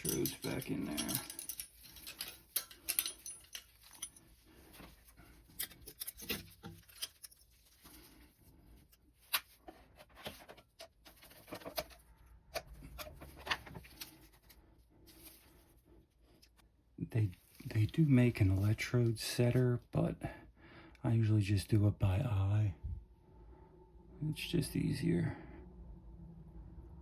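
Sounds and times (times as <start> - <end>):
small metallic clicks and scrapes: 0.0 - 8.2.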